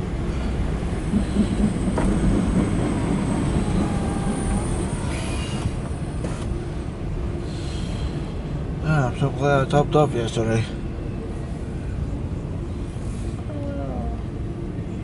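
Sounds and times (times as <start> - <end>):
train wheels rumbling on rail: 0.0 - 13.5
faint wheel squeals: 3.7 - 6.4.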